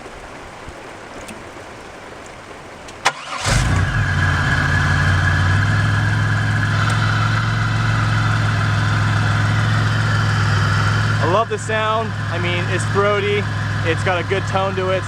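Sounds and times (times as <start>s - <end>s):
car engine starting and idling: 3.0s - 15.0s.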